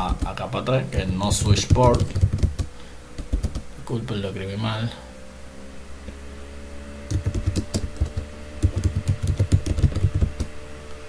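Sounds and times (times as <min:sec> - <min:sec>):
computer keyboard typing: 0:00.0 - 0:00.4, 0:01.3 - 0:03.6, 0:07.1 - 0:10.5
faint steady hum: 0:00.0 - 0:11.0.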